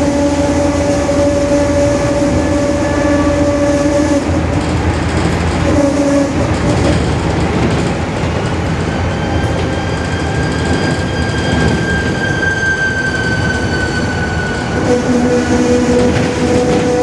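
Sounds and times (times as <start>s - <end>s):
road and engine rumble: 0.0s - 11.8s
bus differential whining: 0.0s - 17.0s.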